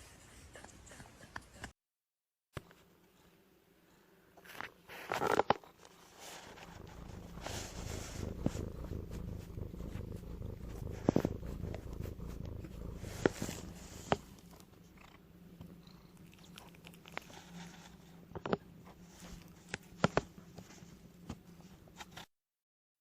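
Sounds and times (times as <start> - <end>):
low rhythmic purring: 6.2 - 21.2.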